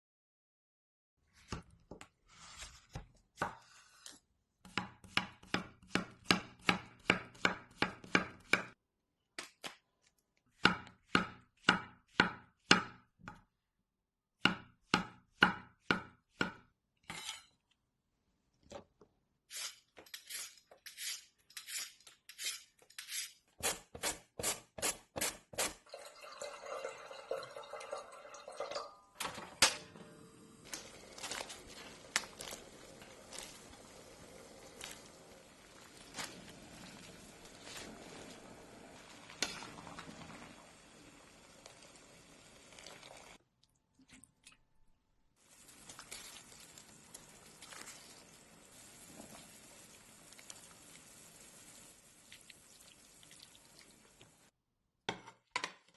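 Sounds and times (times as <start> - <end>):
knife chopping on cutting board: 4.6 - 8.7, 10.6 - 13.0, 14.4 - 16.6.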